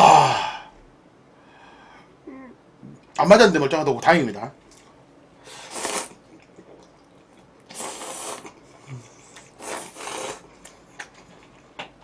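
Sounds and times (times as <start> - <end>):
slurping noodles: 5.5 - 6.2, 7.7 - 10.6.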